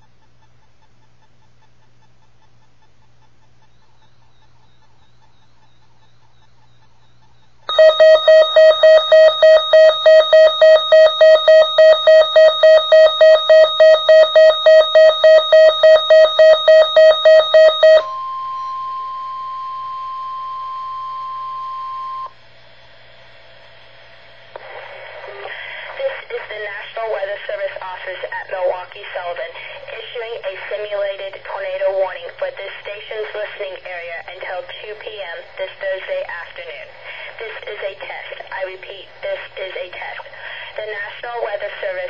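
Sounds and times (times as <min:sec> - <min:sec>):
steady alarm tone: 0:04.0 - 0:22.4
electronic alert beeping: 0:07.7 - 0:19.0
broadcast voice speaking: 0:25.8 - 0:42.0.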